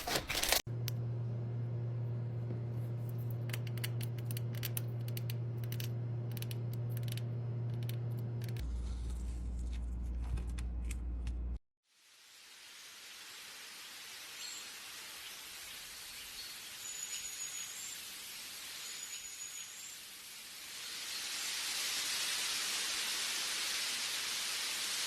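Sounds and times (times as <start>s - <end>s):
steady hiss: 11.9s - 25.0s.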